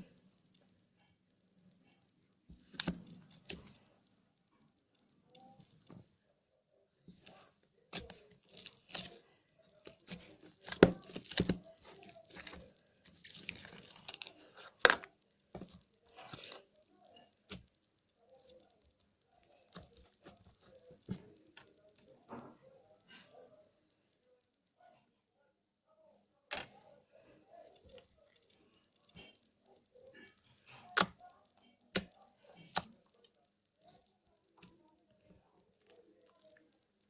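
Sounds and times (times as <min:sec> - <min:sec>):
slime squished by hand: 0:07.1 - 0:17.7.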